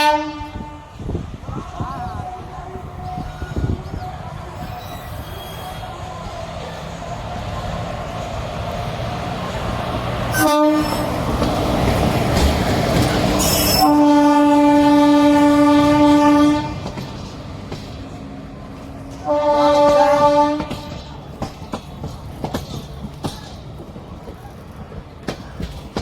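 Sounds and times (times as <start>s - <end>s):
train horn blasts: 0.0s - 1.0s, 10.3s - 11.3s, 13.4s - 17.0s, 19.2s - 21.1s
train rumble and clatter: 0.0s - 26.0s.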